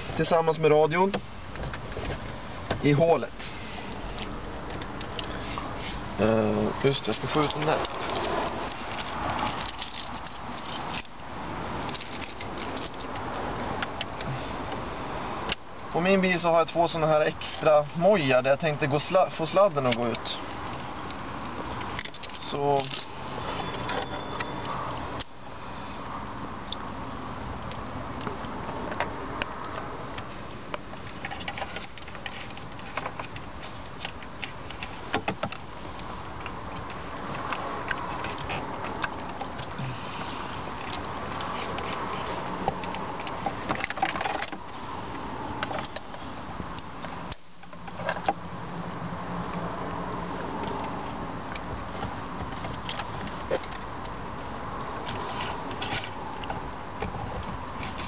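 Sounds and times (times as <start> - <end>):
rustling and rattling of parts: 0.0 - 11.2, 11.8 - 14.9, 16.4 - 24.8, 28.8 - 44.9.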